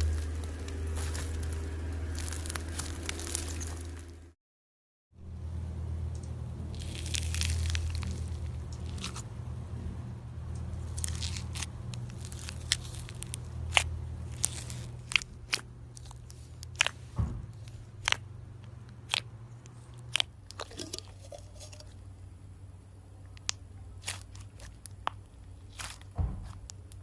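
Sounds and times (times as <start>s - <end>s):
slime crackling and popping: 0.0s - 4.2s, 6.7s - 9.2s, 10.8s - 22.0s, 23.3s - 27.0s
faint low hum: 0.0s - 4.4s, 5.2s - 27.0s.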